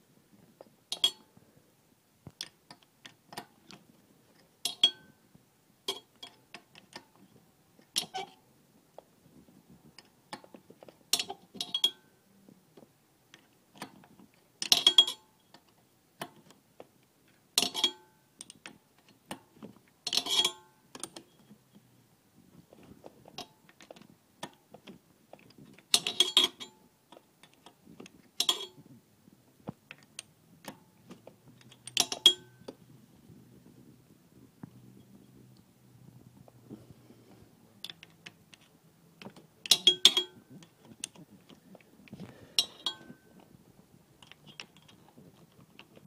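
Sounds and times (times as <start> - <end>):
metal spanner clinking on nut: 0.9 - 1.3, 4.6 - 5.2, 7.9 - 8.4, 11.1 - 12.1, 14.6 - 15.7, 17.6 - 19.4, 20.0 - 21.3, 25.9 - 27.7, 28.4 - 28.8, 31.6 - 32.8, 39.6 - 41.2, 42.6 - 43.3.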